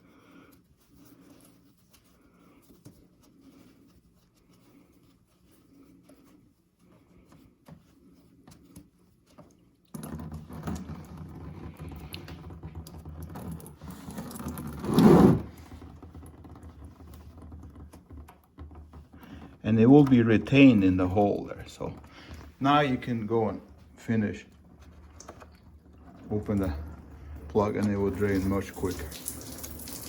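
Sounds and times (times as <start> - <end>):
coolant running into drain pan: 9.9 - 19.6, 24.6 - 30.0.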